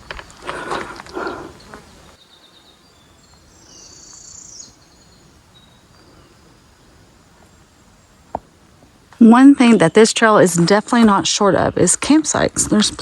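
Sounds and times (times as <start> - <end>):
songbirds calling: 0.0 - 13.0
high bird trill: 1.1 - 8.2.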